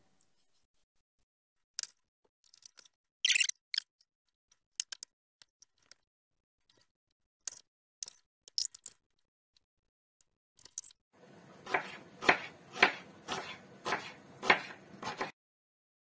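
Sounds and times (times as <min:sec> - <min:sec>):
knife scraping cutting board: 0:11.2 - 0:15.3
knife tapping on cutting board: 0:11.7 - 0:15.3.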